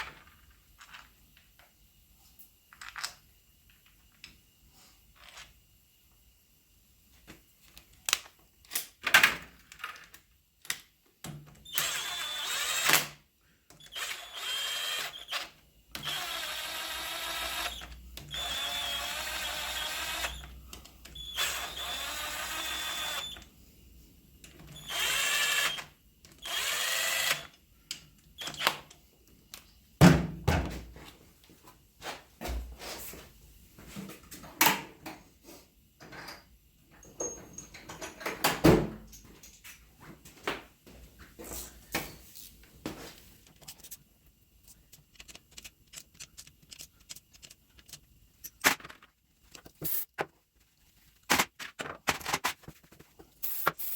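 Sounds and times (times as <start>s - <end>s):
power drill running: 11.6s - 13.2s, 13.8s - 20.6s, 21.2s - 23.4s, 24.7s - 27.5s, 28.4s - 28.6s.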